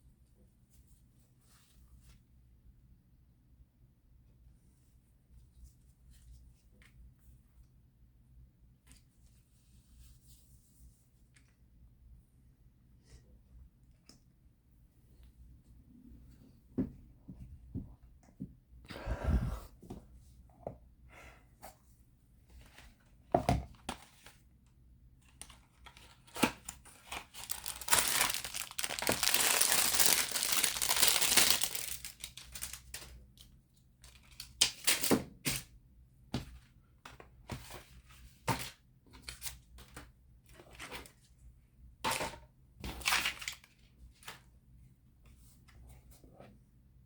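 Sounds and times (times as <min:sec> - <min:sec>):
protective film tearing and peeling: 0:27.4 - 0:32.8.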